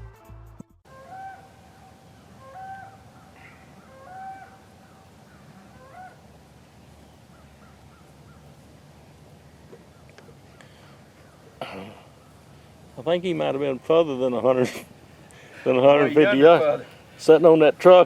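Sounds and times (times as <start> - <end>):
crows cawing: 0.9 - 6.4, 7.2 - 8.7, 9.4 - 13.0
faint low outdoor rumble: 0.9 - 18.0.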